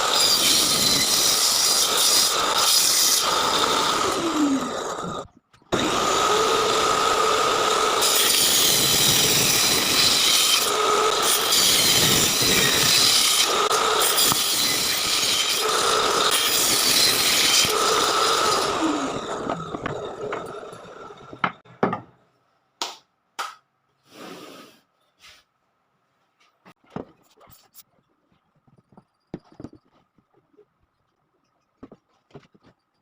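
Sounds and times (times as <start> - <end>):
power tool working wood: 0.0 - 21.6.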